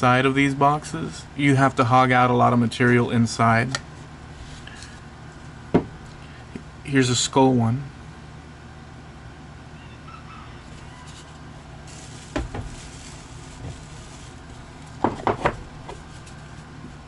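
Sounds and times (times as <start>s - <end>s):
steady low hum: 0.0s - 17.0s
wooden box knocks: 15.0s - 15.6s.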